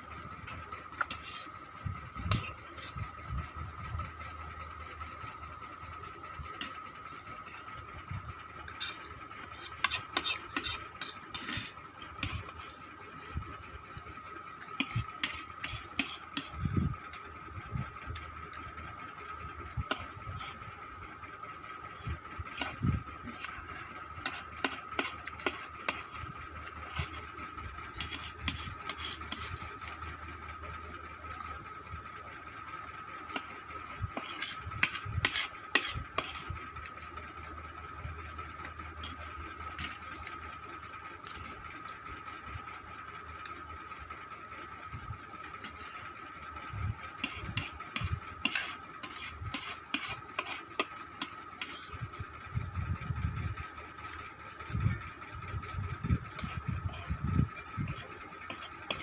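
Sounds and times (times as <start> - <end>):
faint high whine: 0.0 - 59.0
utensil scraping a bowl: 1.0 - 1.6, 2.2 - 3.0, 8.6 - 12.8, 13.9 - 16.8, 19.7 - 20.7, 21.8 - 30.2, 33.2 - 37.0, 39.0 - 40.4, 45.4 - 46.2, 46.9 - 52.2, 56.2 - 59.0.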